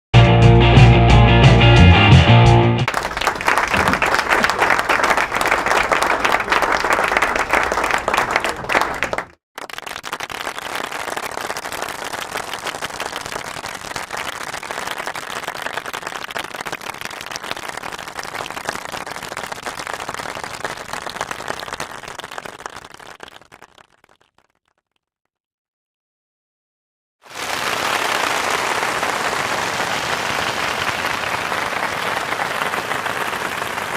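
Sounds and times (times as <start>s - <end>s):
crowd applause: 2.9s - 24.2s, 27.3s - 33.9s.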